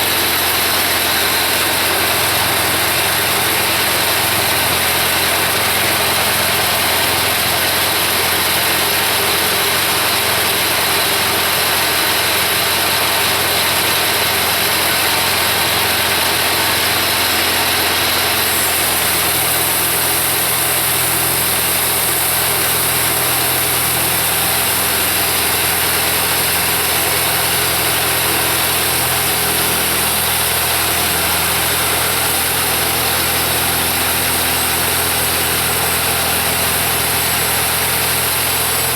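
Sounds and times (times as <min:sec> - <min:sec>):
diesel engine running: 0:00.0 - 0:38.9.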